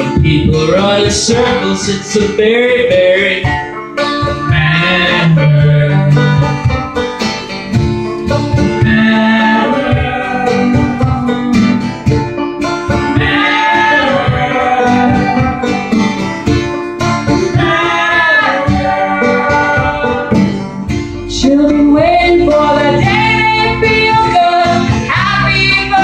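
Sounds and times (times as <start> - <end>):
acoustic guitar picking: 0.0 - 26.0
banjo picking: 0.0 - 26.0
wordless vocal harmony: 4.4 - 6.6, 8.6 - 12.0, 13.0 - 16.2, 17.3 - 26.0.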